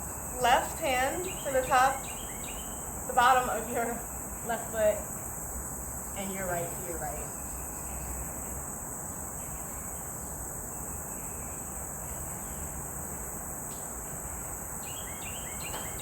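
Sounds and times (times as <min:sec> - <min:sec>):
crickets chirping: 0:00.0 - 0:16.0
outdoor background hiss: 0:00.0 - 0:16.0.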